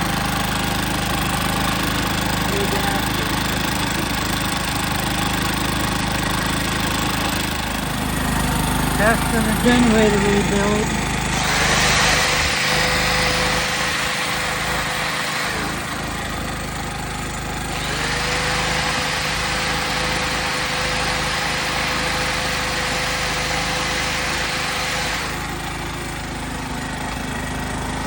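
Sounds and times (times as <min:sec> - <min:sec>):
generator engine running: 0:00.0 - 0:28.0.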